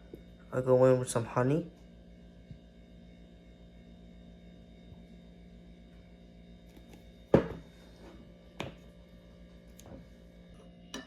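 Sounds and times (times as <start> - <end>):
steady low hum: 0.0 - 11.0
knocks on a hard surface: 7.3 - 7.7.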